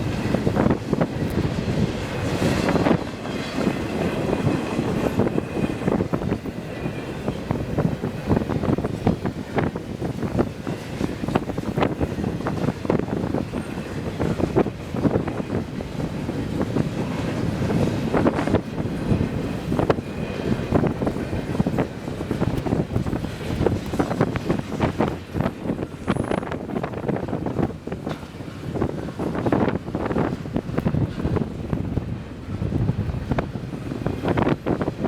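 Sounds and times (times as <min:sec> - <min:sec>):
freight train rumbling: 0:00.0 - 0:35.0
wind buffeting microphone: 0:00.0 - 0:35.0.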